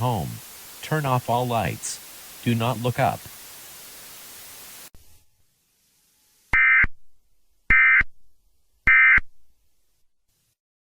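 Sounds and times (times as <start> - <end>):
static hiss: 0.0 - 6.8, 8.9 - 10.6.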